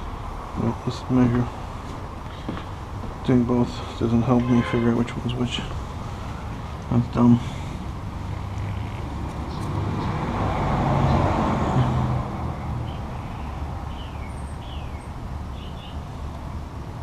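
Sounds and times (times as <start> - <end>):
road vehicle passing: 0.0 - 17.0
steady background noise: 0.0 - 17.0.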